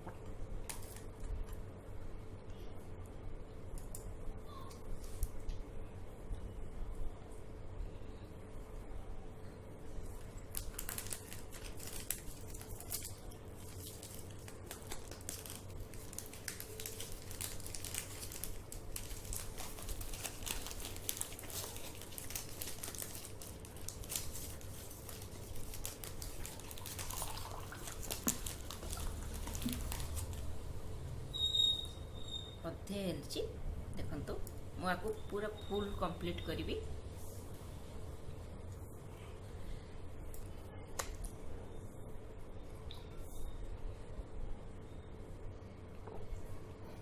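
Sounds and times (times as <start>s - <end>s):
plastic bottle crinkling: 10.5s - 30.5s.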